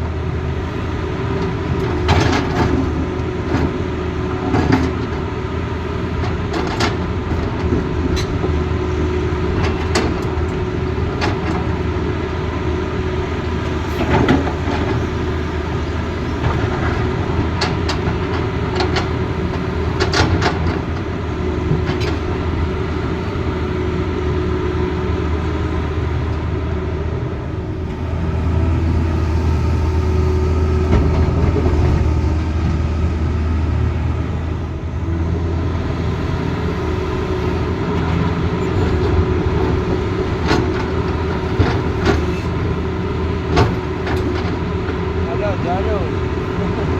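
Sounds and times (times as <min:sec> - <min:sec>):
excavator diesel engine running: 0:00.0 - 0:46.9.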